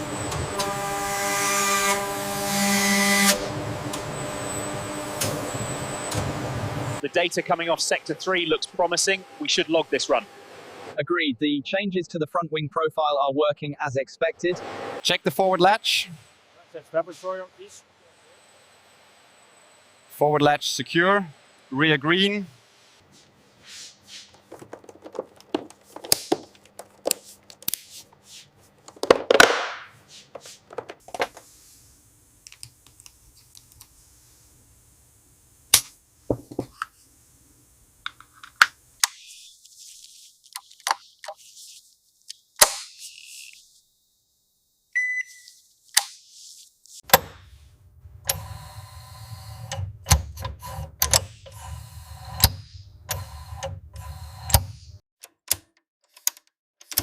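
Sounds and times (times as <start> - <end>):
short beep: 45.0 - 45.6.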